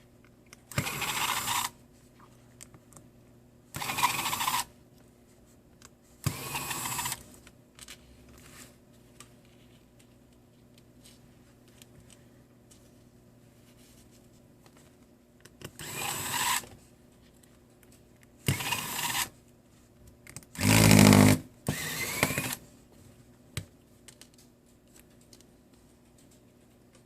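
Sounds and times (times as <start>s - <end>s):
electric screwdriver running: 0.8s - 1.7s, 3.8s - 4.6s, 6.3s - 7.2s, 15.8s - 16.6s, 18.5s - 19.3s, 20.6s - 22.6s.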